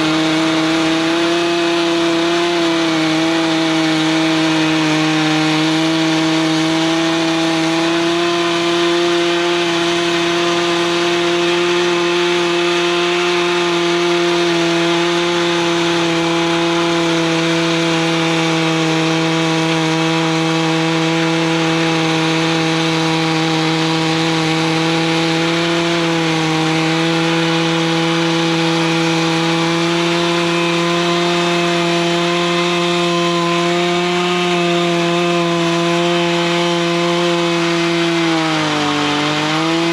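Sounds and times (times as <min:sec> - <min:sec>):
chainsaw cutting through log: 0:00.0 - 0:39.9.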